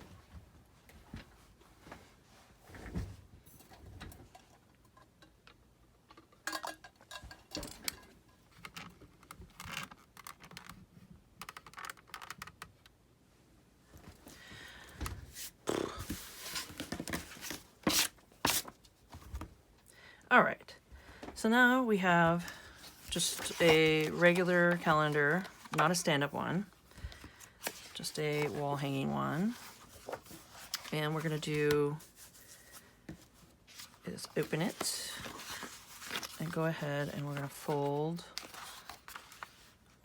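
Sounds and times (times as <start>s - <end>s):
paper rustling: 22.4s - 26.0s, 27.0s - 39.8s.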